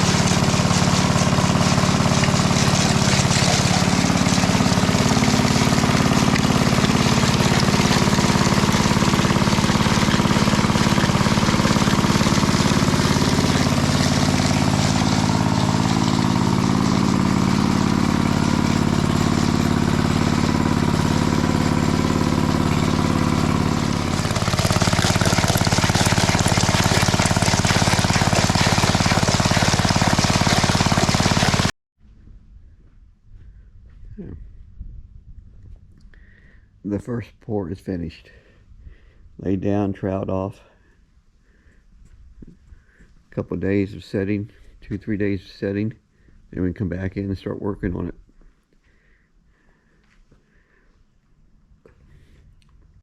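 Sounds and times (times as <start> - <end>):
small gasoline engine running: 0.0 - 31.7.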